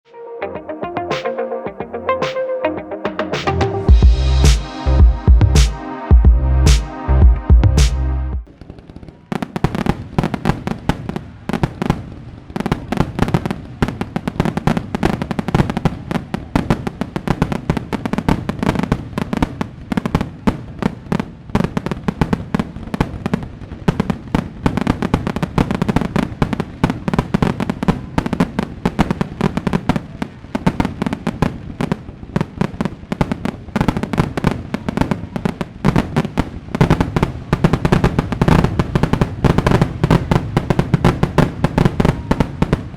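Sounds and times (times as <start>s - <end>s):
fireworks bangs and crackles: 8.5s - 42.9s.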